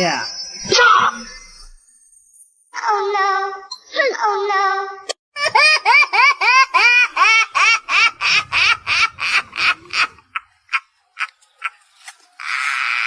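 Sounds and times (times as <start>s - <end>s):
high-pitched laughter: 5.4s - 13.0s.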